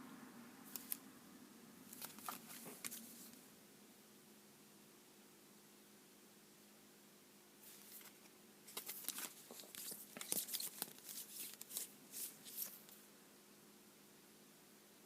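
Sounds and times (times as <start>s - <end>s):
trading cards rustling and clicking: 0.7s - 1.0s, 1.9s - 3.4s, 7.7s - 13.0s.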